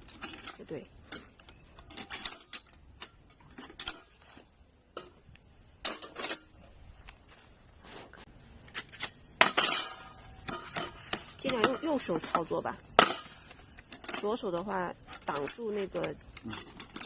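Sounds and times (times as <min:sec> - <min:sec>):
metal parts clinking: 0:00.0 - 0:04.2, 0:08.7 - 0:17.0
metal hit ringing: 0:09.4 - 0:11.9, 0:12.9 - 0:14.2.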